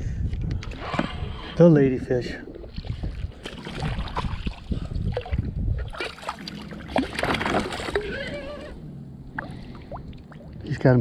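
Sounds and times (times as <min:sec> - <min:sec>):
wind buffeting microphone: 0:00.0 - 0:11.0
fish splashing at water surface: 0:05.9 - 0:08.2.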